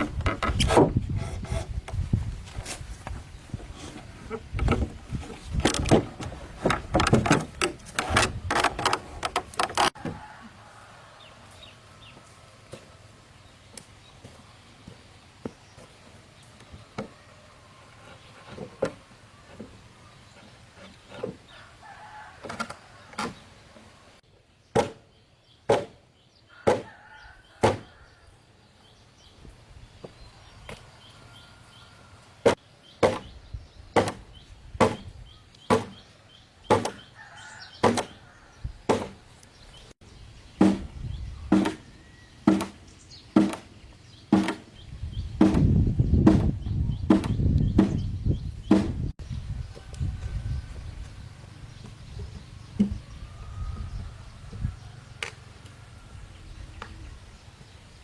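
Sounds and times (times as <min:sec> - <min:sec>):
sharp chopping strikes: 0:24.7 - 0:25.0, 0:25.7 - 0:26.0, 0:26.7 - 0:26.9, 0:27.6 - 0:27.9, 0:34.0 - 0:34.2, 0:34.8 - 0:35.1, 0:35.7 - 0:36.0, 0:37.8 - 0:38.2, 0:38.9 - 0:39.2, 0:40.6 - 0:40.9, 0:41.5 - 0:41.8, 0:42.5 - 0:42.8, 0:43.4 - 0:43.7, 0:44.3 - 0:44.7, 0:45.4 - 0:46.5, 0:48.7 - 0:49.0.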